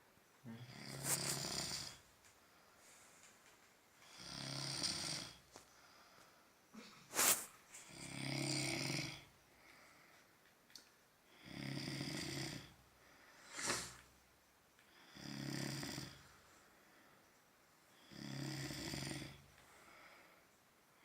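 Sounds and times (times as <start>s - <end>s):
person snoring heavily: 0.5s - 2.0s, 4.0s - 5.4s, 7.1s - 9.3s, 11.3s - 12.7s, 13.4s - 14.0s, 15.0s - 16.2s, 18.0s - 19.4s
breath hiss: 0.6s - 2.0s, 4.0s - 10.2s, 13.0s - 14.1s.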